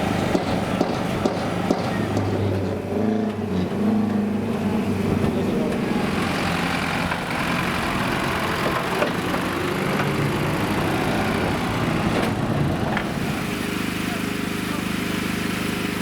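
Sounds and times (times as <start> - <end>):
car engines rumbling: 0.0 - 15.9.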